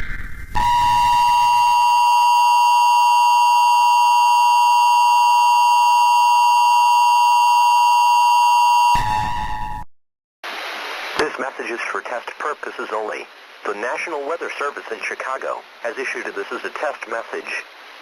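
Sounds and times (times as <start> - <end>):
loud two-tone beep: 0.6 - 9.9.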